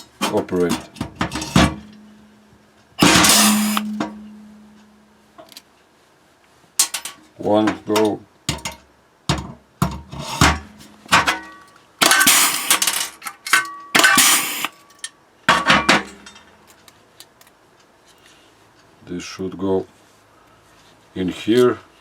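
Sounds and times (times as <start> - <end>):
metal clanks and knocks: 0.0 - 2.2, 3.0 - 5.0, 6.8 - 14.7, 15.5 - 16.5
metallic ringing: 1.4 - 5.2.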